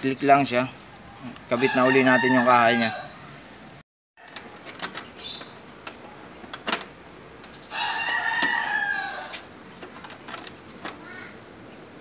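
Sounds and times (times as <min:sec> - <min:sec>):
rooster crowing: 0:01.5 - 0:03.3, 0:07.7 - 0:09.5.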